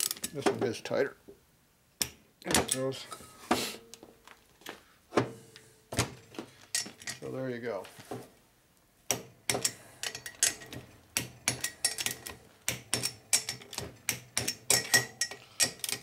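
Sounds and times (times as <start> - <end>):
metal parts clinking: 6.7 - 7.3, 9.6 - 10.8, 11.5 - 12.4, 14.5 - 16.0.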